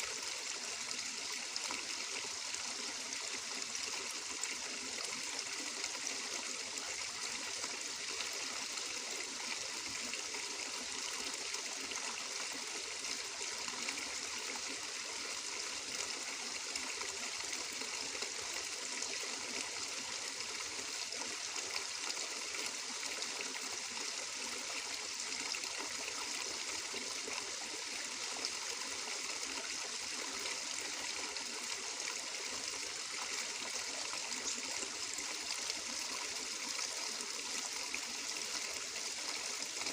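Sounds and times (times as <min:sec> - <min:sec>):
water flowing in a stream: 0:00.0 - 0:39.9.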